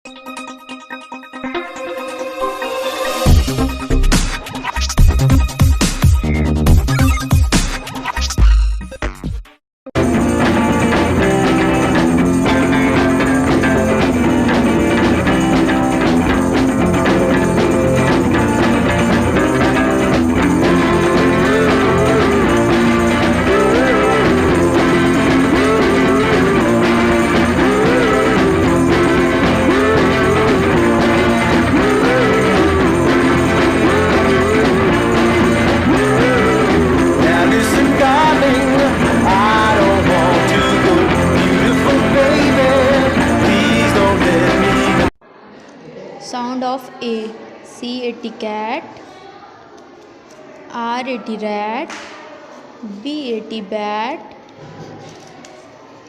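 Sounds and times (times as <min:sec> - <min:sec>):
background music: 0:00.1 - 0:09.3, 0:10.0 - 0:45.2.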